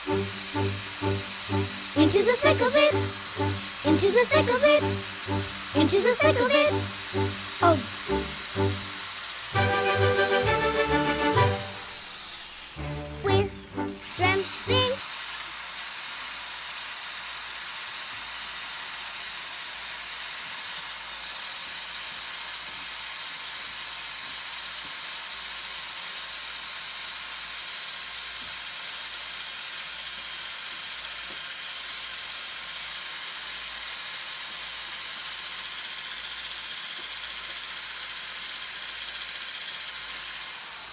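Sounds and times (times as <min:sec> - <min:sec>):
spraying hiss: 0:00.0 - 0:12.1.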